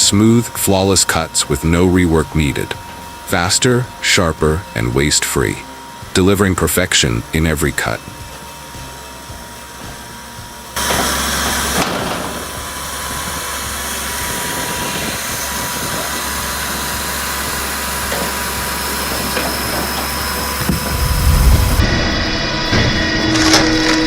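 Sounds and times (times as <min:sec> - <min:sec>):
wood-cutting machine running: 0:00.0 - 0:24.0
low rumble: 0:20.7 - 0:23.1.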